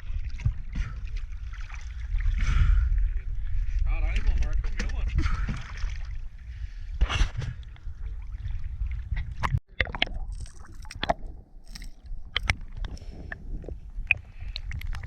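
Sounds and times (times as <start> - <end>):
water sloshing and gurgling: 0.0 - 15.0
steady low rumble: 10.2 - 15.0.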